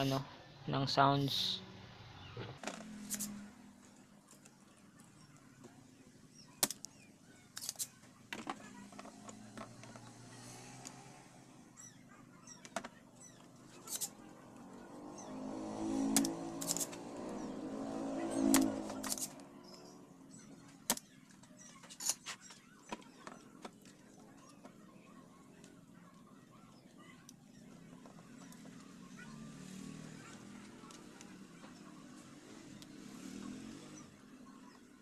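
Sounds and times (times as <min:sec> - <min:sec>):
small tools clicking and tapping: 0:07.6 - 0:10.1, 0:16.1 - 0:17.0, 0:18.5 - 0:19.9.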